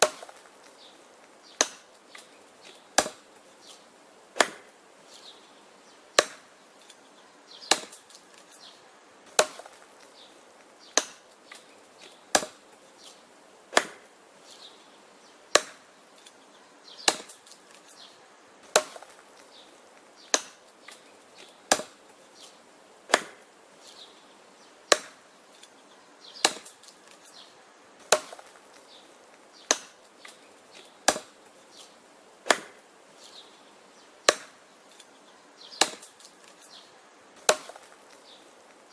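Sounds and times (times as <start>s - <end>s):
axe chopping wood: 0.0s - 0.7s, 1.5s - 3.3s, 4.4s - 4.8s, 6.2s - 6.5s, 7.6s - 8.5s, 9.3s - 10.1s, 10.8s - 12.7s, 13.7s - 14.1s, 15.5s - 15.9s, 17.0s - 17.9s, 18.6s - 19.5s, 20.2s - 22.0s, 23.1s - 23.5s, 24.9s - 25.2s, 26.4s - 27.3s, 28.0s - 28.8s, 29.6s - 31.4s, 32.4s - 32.8s, 34.2s - 34.6s, 35.7s - 36.6s, 37.4s - 38.4s.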